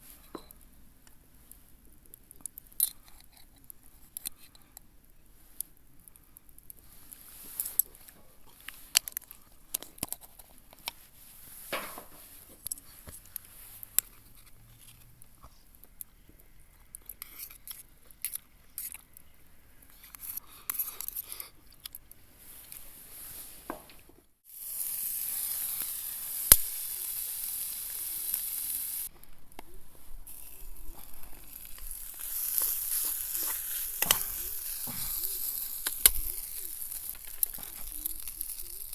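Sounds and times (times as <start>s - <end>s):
food sizzling in a frying pan: 24.4s - 29.1s, 30.2s - 38.9s.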